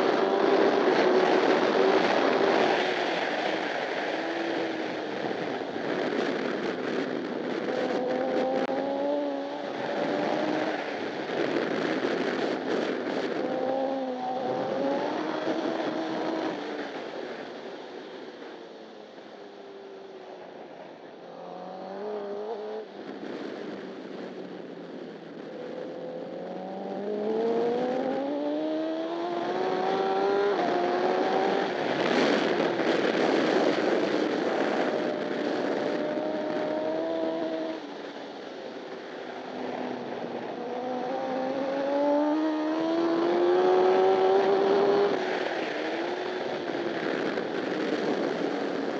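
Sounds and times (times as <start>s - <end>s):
motorcycle engine revving: 0.0s - 17.0s, 25.5s - 48.9s
wind rush: 0.0s - 20.9s, 21.8s - 48.9s.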